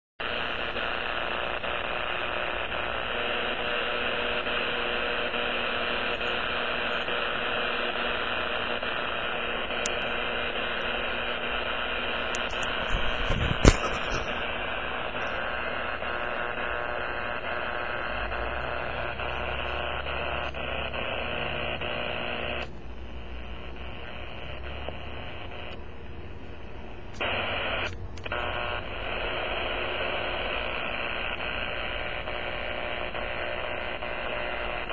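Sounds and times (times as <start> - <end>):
radio receiver hiss: 0.2 - 34.9
sharp click: 12.3 - 14.3.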